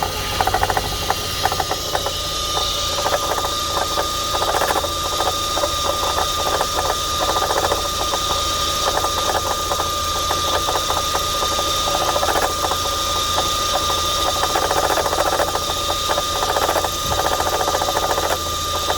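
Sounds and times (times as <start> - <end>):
high-pitched whine: 0.0 - 15.9
car engine idling: 0.0 - 18.9
rapid knocking: 0.0 - 18.9.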